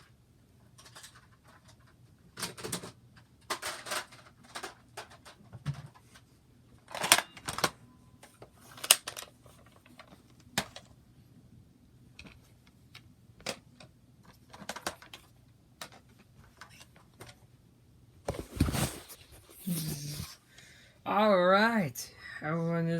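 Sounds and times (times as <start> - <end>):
objects being handled: 18.3 - 20.4.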